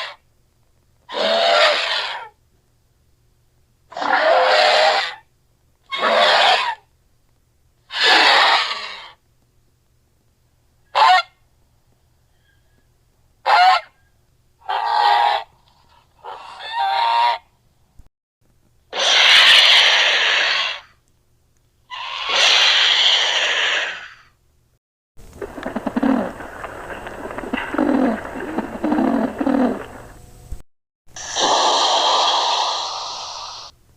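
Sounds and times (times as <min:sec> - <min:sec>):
bird-like calls: 0:21.9 - 0:24.2, 0:25.4 - 0:30.2.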